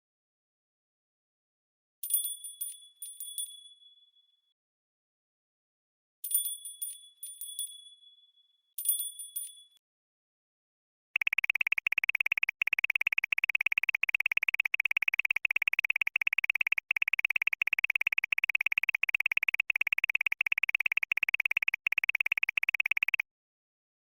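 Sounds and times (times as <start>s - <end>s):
high-pitched electronic trill: 11.2s - 23.2s.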